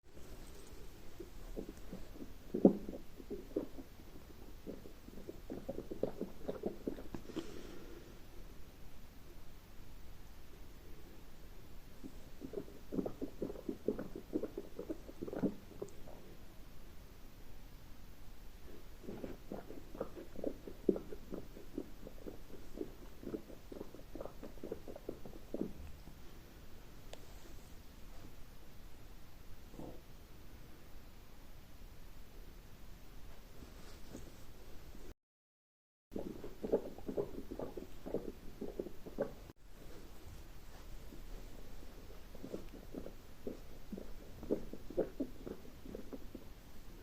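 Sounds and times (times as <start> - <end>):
stomach growling: 0.1 - 7.9, 12.0 - 16.5, 18.6 - 26.1, 29.7 - 30.1, 36.1 - 47.0.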